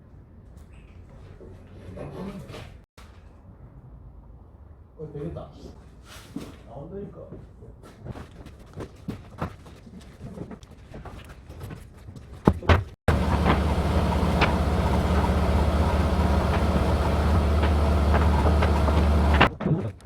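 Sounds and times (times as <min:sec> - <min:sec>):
vehicle low rumble: 0:13.1 - 0:19.5.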